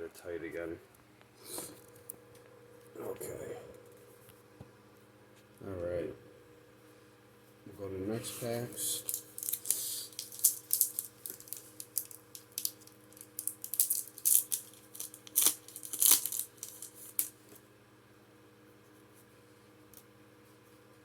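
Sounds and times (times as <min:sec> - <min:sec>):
foil wrappers crinkling: 0:08.2 - 0:17.6.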